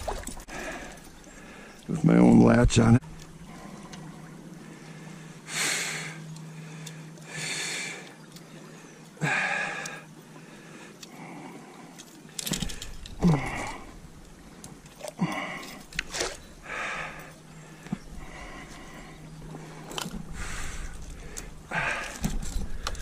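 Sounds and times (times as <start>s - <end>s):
person breathing hard: 4.6s - 8.1s, 16.6s - 23.0s.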